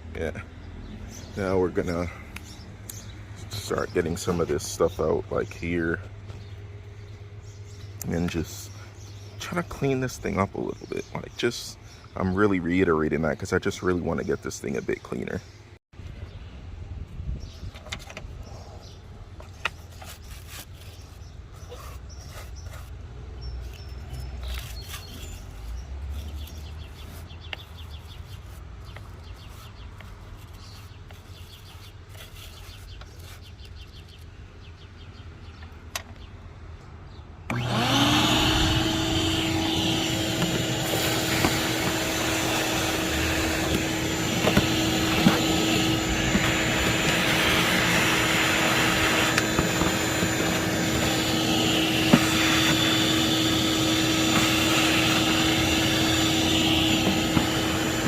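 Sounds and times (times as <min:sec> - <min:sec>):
handling and rubbing sounds: 0:19.3 - 0:34.3, 0:39.2 - 0:58.0
vacuum cleaner motor running: 0:37.5 - 0:58.0.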